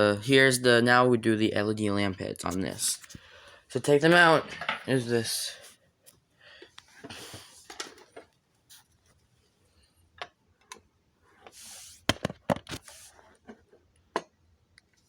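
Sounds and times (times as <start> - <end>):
plastic scraping and rubbing: 11.4 - 13.8.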